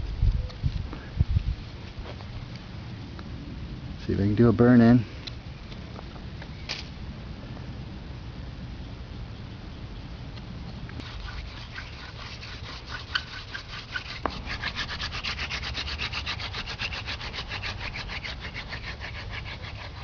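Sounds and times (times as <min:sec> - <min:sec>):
wooden hand drill rubbing fireboard: 0:11.0 - 0:20.0.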